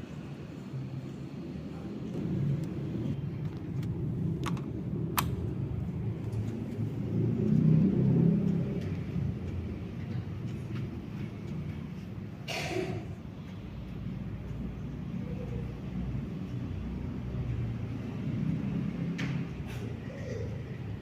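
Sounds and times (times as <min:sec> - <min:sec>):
ceiling fan rumbling: 0:00.0 - 0:21.0
sharp clicks: 0:03.8 - 0:05.4.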